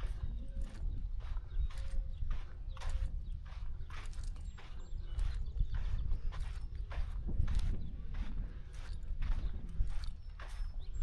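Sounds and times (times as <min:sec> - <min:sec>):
footsteps on sand: 0:00.0 - 0:11.0
wind rumble on microphone: 0:00.0 - 0:11.0.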